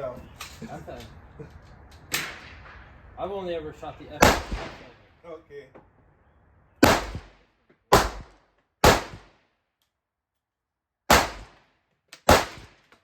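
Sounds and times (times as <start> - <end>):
gunshots with echo: 4.2 - 5.0, 6.8 - 9.4, 11.1 - 11.7, 12.3 - 12.9.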